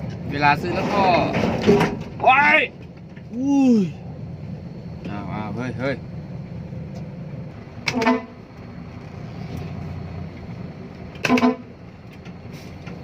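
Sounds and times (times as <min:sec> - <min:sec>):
engine humming: 0:00.0 - 0:13.0
vehicle horn toots: 0:07.9 - 0:08.4, 0:11.2 - 0:11.8.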